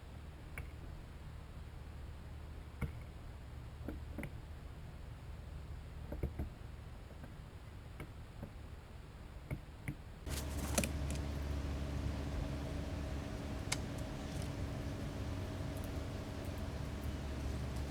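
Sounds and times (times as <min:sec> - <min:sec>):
light clicks and taps: 0:10.3 - 0:17.9
low hum: 0:10.3 - 0:17.9.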